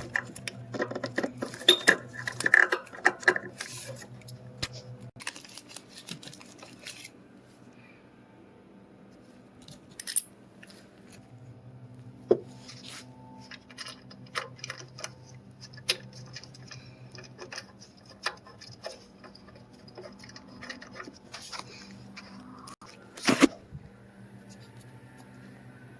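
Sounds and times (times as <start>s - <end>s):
hand tools and metal parts clinking: 0.0s - 4.1s, 9.6s - 11.2s.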